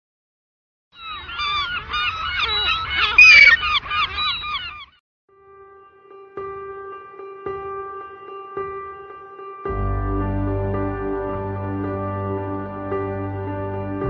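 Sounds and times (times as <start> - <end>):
flock of birds calling: 1.0 - 5.0
soft music with held notes: 5.3 - 14.0.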